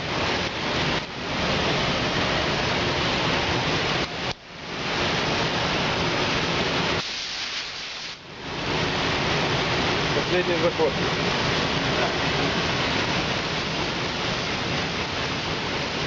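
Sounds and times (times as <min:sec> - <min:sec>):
rushing hiss of bodywork tool: 0:07.0 - 0:08.2.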